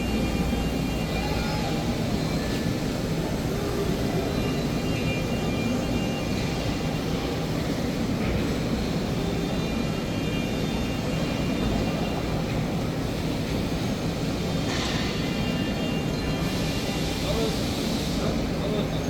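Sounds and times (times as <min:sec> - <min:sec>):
faint high tones: 0:00.0 - 0:02.8
machining center humming: 0:00.0 - 0:19.0.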